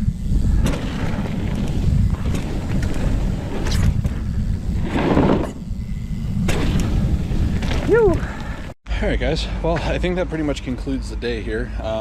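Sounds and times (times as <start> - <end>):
tyre noise on dirt trail: 0.0 - 8.8
bike knocks and rattles: 0.4 - 5.6, 6.4 - 8.7.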